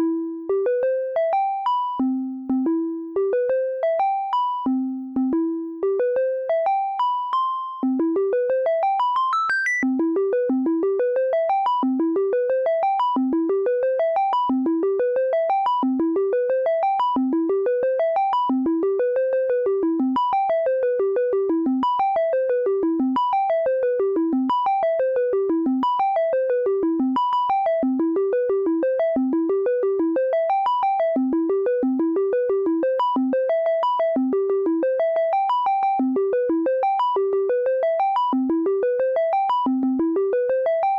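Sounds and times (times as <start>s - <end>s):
synthesizer arpeggio: 9.3s - 9.8s.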